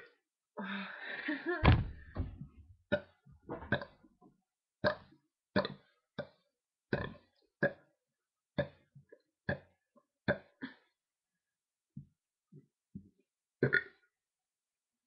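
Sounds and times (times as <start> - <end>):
person burping: 6.9 - 7.8, 13.6 - 14.0.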